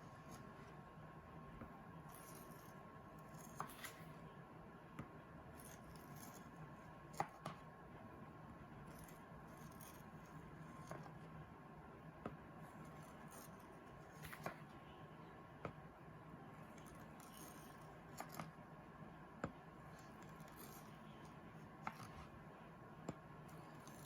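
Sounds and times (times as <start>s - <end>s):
faint steady hum: 0.0s - 24.0s
knife clicks and taps cutting jelly: 7.1s - 7.6s, 16.8s - 18.6s.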